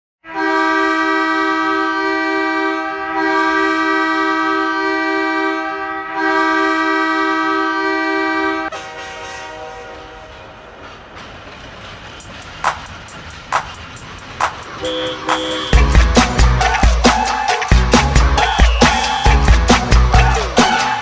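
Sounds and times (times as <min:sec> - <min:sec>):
goal horn blasts: 0:00.2 - 0:10.0, 0:14.8 - 0:16.2.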